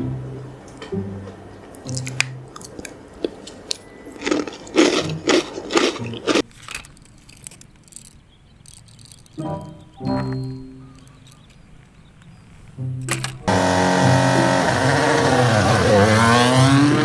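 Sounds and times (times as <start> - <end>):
crunching crackling noises: 0.7 - 13.8
scattered clicks: 6.4 - 13.5.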